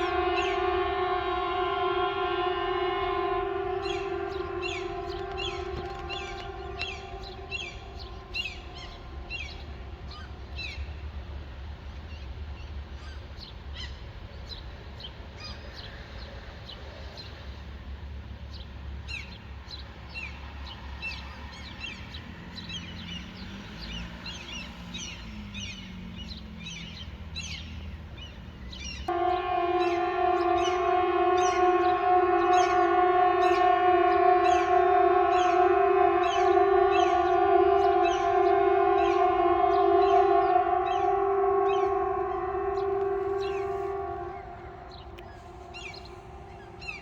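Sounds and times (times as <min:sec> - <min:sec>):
faint low drone: 0:00.0 - 0:11.8, 0:29.1 - 0:47.0
small birds chirping: 0:03.7 - 0:15.9, 0:21.1 - 0:47.0.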